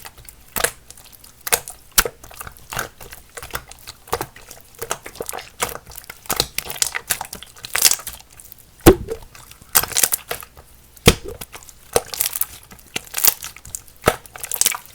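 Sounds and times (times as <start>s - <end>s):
slime squished by hand: 8.9s - 9.3s, 11.1s - 12.3s.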